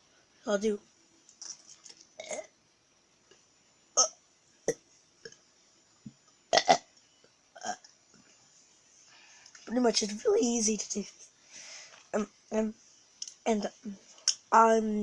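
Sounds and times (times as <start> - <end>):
person burping: 2.2 - 2.5, 4.0 - 5.4, 6.5 - 6.9, 7.6 - 7.8.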